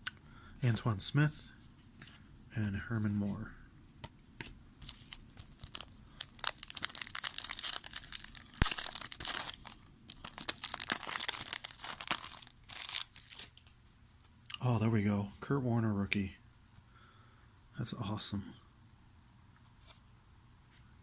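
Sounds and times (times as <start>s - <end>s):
card pack wrapper crinkling and tearing: 4.8s - 13.8s.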